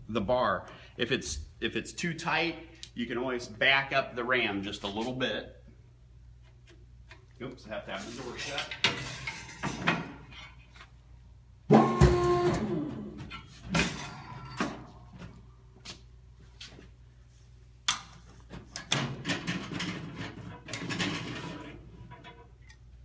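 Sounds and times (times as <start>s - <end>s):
metal knocks and rattling: 18.9s - 22.6s.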